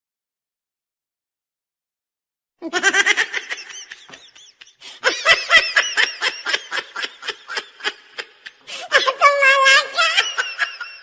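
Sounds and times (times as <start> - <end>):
quick rhythmic laughter: 2.6 - 8.8.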